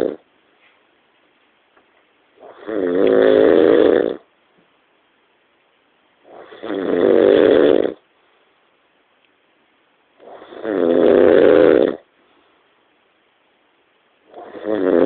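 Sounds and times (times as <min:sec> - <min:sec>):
person snoring loudly: 0:00.0 - 0:00.2, 0:02.4 - 0:04.2, 0:06.3 - 0:08.0, 0:10.2 - 0:12.0, 0:14.3 - 0:15.0
quiet breathing: 0:07.8 - 0:08.8, 0:11.5 - 0:13.1.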